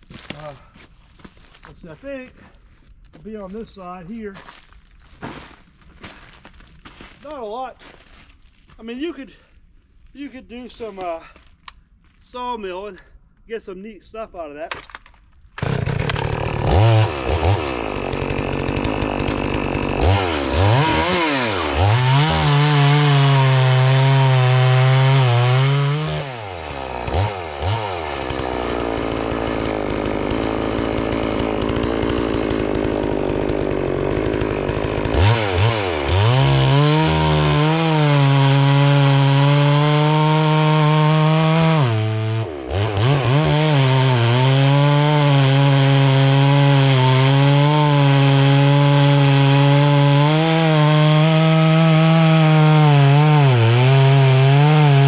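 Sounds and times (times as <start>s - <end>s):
chainsaw cutting log: 14.7s - 55.0s.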